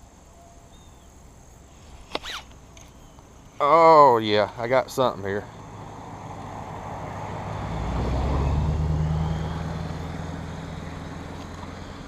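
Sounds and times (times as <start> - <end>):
passing engine: 4.6 - 12.0.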